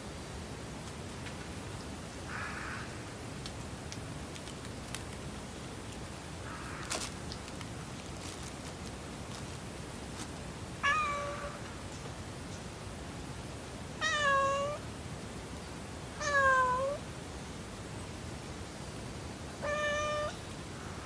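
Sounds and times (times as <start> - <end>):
cat meowing: 10.8 - 11.6, 14.0 - 14.8, 16.2 - 17.0, 19.6 - 20.4.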